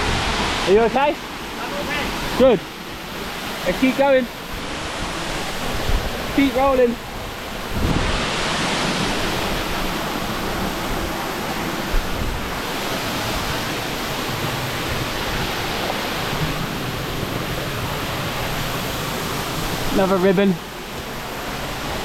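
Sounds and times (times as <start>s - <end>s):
waterfall rushing: 0.0s - 22.0s.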